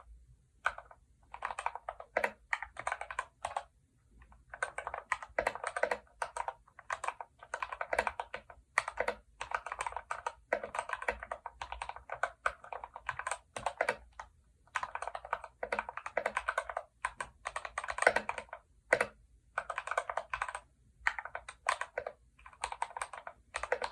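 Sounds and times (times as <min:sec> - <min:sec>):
mechanical keyboard typing: 0:00.6 - 0:23.9.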